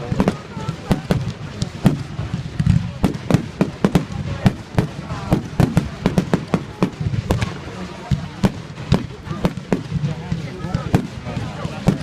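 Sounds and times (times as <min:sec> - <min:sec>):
fireworks bangs and cracks: 0:00.0 - 0:12.0.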